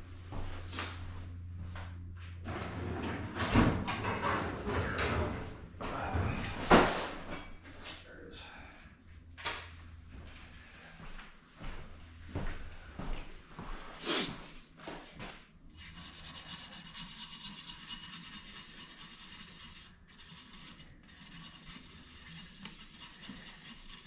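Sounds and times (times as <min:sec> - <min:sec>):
sandpaper rubbing: 0:15.8 - 0:24.0.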